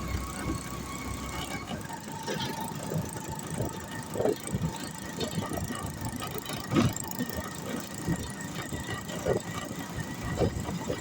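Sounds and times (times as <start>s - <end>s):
engine thin whine: 0.0s - 11.0s
rickshaw body rattling: 1.4s - 11.0s.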